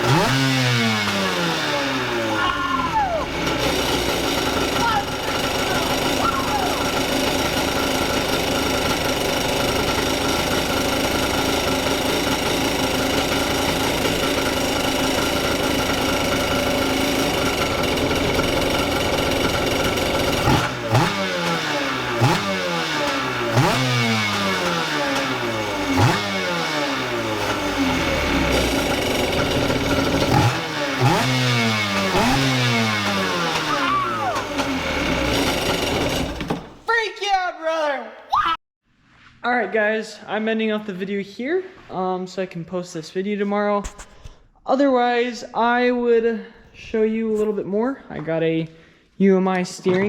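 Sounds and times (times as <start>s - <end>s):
jet ski engine revving: 0.0s - 36.7s.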